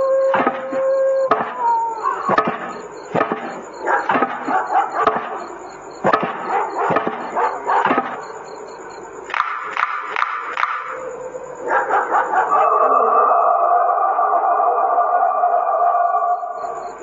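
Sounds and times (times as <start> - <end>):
dog barking and yelping: 0.3 - 2.8, 3.8 - 5.4, 6.4 - 8.1, 11.6 - 16.3.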